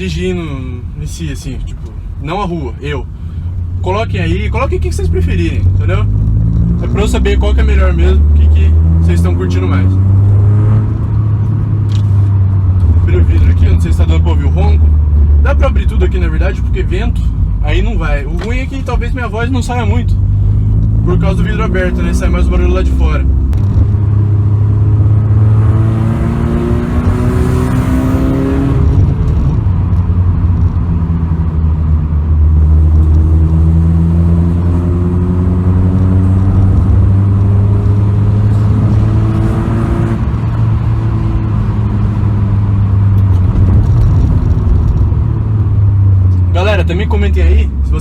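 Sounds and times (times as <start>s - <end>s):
car engine accelerating: 0.0s - 48.0s.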